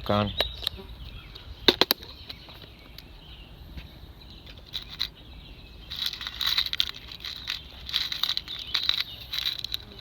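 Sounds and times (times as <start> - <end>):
wasps buzzing: 7.0 - 10.0.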